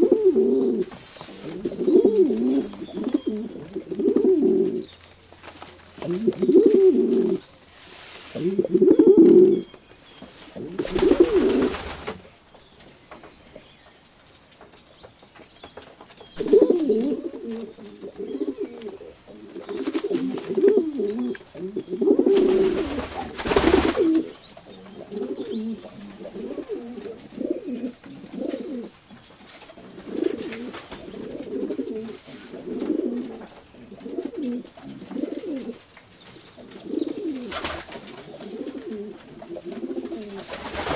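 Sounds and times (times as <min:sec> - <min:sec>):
pigeons cooing: 0:00.0 - 0:05.0, 0:06.0 - 0:07.5, 0:08.3 - 0:09.8, 0:10.5 - 0:12.2, 0:16.4 - 0:29.0, 0:29.7 - 0:40.9
rustling bursts: 0:04.6 - 0:12.4, 0:22.2 - 0:24.3.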